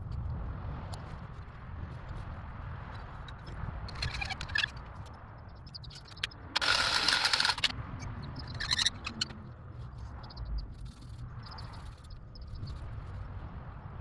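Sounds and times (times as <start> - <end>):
plumbing work clicks and clatter: 6.0 - 7.7.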